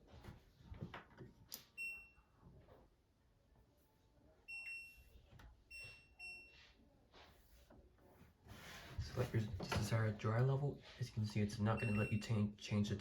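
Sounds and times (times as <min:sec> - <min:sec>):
short electronic beeps: 0:11.8 - 0:12.3.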